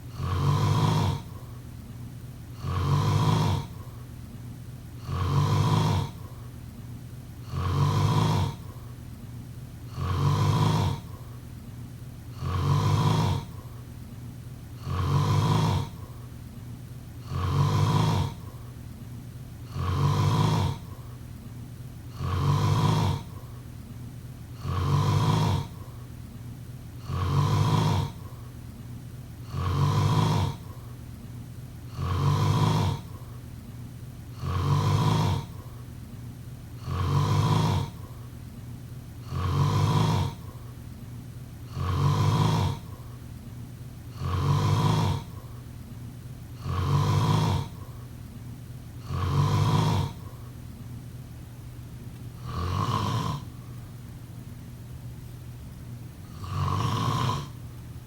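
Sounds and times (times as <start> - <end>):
faint low hum: 0.0 - 58.0
person snoring: 0.1 - 1.5, 2.6 - 4.0, 5.0 - 6.5, 7.4 - 8.9, 9.9 - 11.4, 12.3 - 13.8, 14.8 - 16.3, 17.2 - 18.7, 19.6 - 21.2, 22.1 - 23.6, 24.6 - 26.1, 27.0 - 28.5, 29.4 - 31.0, 31.9 - 33.4, 34.3 - 35.8, 36.8 - 38.3, 39.2 - 40.7, 41.7 - 43.2, 44.1 - 45.6, 46.6 - 48.1, 49.0 - 50.5, 52.4 - 53.8, 56.2 - 57.6.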